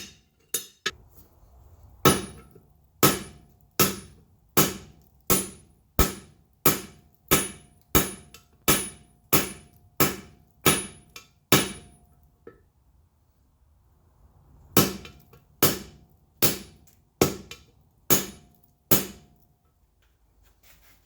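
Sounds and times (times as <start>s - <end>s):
hammer striking iron on anvil: 0.0s - 1.0s, 2.0s - 12.1s, 14.8s - 19.3s.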